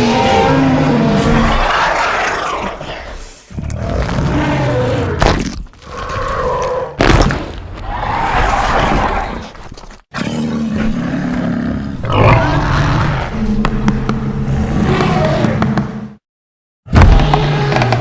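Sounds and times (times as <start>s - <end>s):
dinosaur roars: 0.0s - 5.2s, 5.8s - 7.0s, 10.2s - 15.6s
low drawn-out growl: 10.4s - 15.6s.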